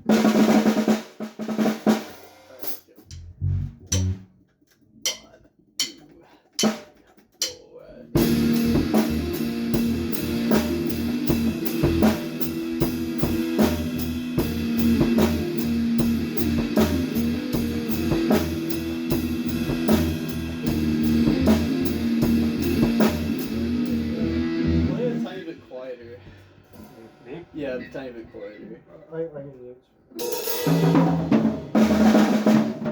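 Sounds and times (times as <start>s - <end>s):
rock band playing: 3.4s - 4.2s, 8.1s - 25.6s, 30.2s - 32.9s.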